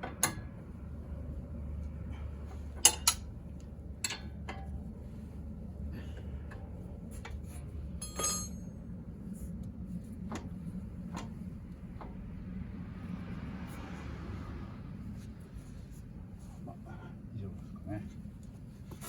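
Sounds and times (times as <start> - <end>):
steady low hum: 0.0 - 19.0
metal tools clicking and knocking: 2.8 - 3.2, 8.0 - 8.6
ringing metal clink: 8.0 - 8.7.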